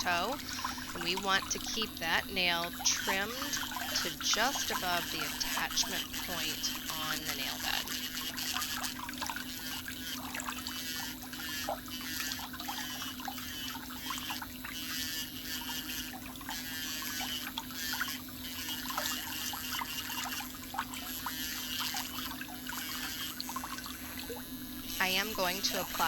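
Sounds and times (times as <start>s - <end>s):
scratchy scraping on toenails: 0.0s - 9.0s
steady low hum: 0.0s - 11.8s, 18.5s - 26.0s.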